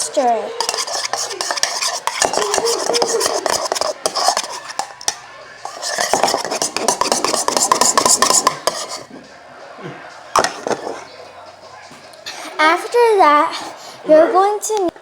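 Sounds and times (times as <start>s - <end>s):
spoon clinking and scraping bowl: 0.0s - 9.1s, 10.4s - 11.1s.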